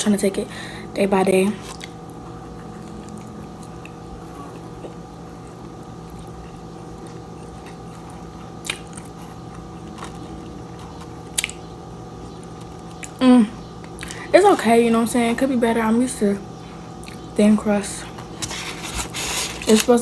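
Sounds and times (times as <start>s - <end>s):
person chewing food: 1.6s - 13.2s, 13.8s - 14.3s, 16.8s - 17.3s.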